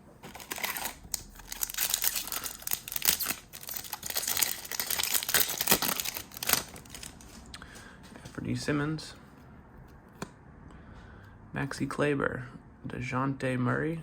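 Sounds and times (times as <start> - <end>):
foil wrapper tearing and crinkling: 0.3 - 7.4.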